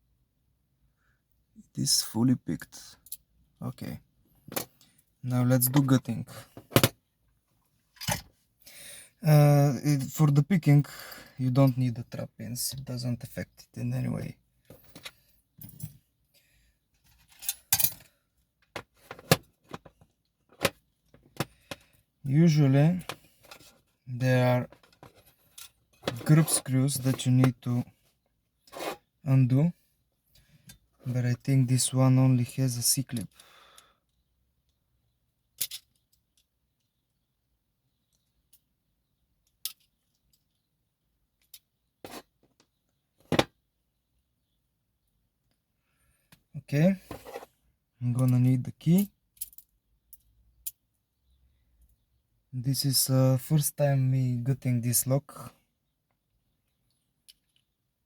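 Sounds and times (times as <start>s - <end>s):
metal tools clicking and scraping: 8.0s - 8.3s, 17.1s - 18.1s, 35.6s - 36.5s
metal lock clicks and clinks: 35.6s - 36.2s.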